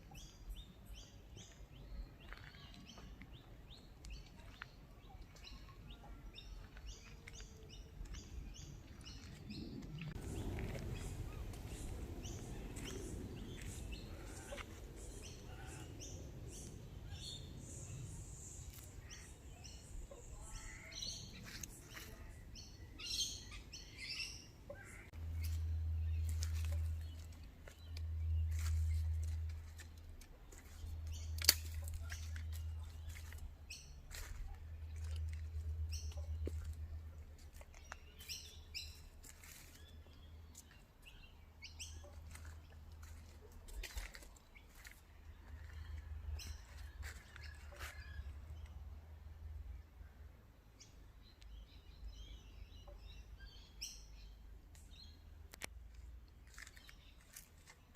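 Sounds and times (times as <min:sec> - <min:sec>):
birds chirping: 0:00.0 - 0:48.8
low rumble: 0:08.0 - 0:19.1, 0:25.1 - 0:38.0.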